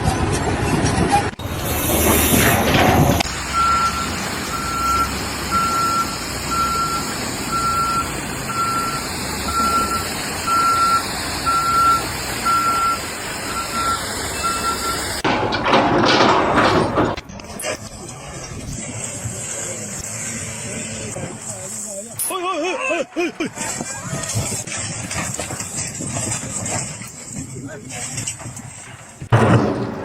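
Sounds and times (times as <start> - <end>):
vehicle reversing alarm beeping: 3.4 - 15.2.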